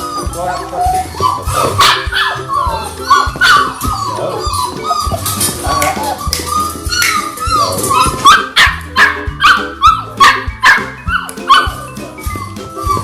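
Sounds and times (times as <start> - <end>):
background music: 0.0 - 13.0
puppies yipping and whining: 0.0 - 13.0.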